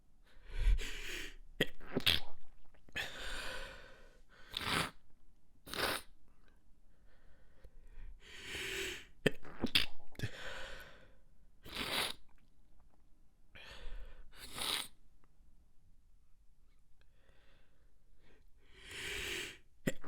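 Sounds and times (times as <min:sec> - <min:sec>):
breath in: 0:00.3 - 0:01.4, 0:07.1 - 0:09.2, 0:17.2 - 0:19.6.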